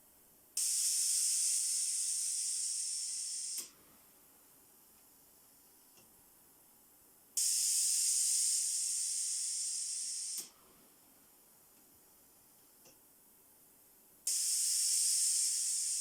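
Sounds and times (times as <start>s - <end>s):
compressed air hissing from valve: 0.6s - 3.7s, 7.4s - 10.6s, 14.3s - 16.0s.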